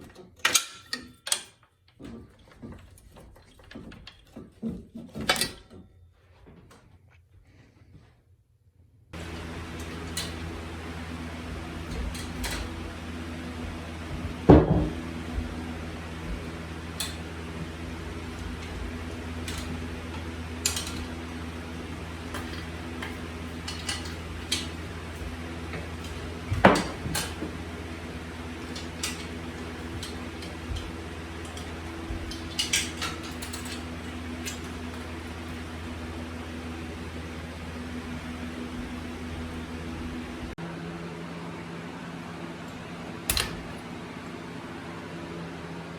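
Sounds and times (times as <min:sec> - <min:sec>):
metal tools clinking: 0:09.2 - 0:40.0
steady low hum: 0:09.2 - 0:40.6
loud knocks: 0:11.6 - 0:21.4.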